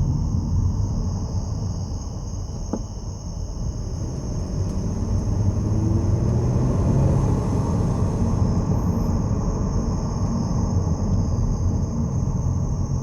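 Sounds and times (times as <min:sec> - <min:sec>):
car rumble on the move: 0:00.0 - 0:13.0.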